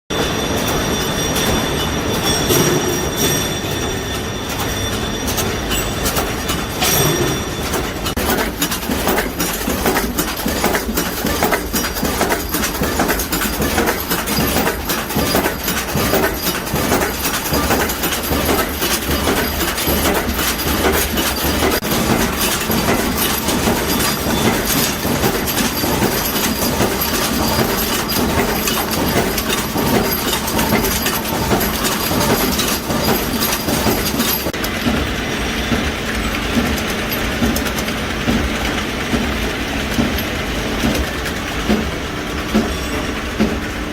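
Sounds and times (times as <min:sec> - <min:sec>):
heading machine clattering: 0:00.1 - 0:43.7.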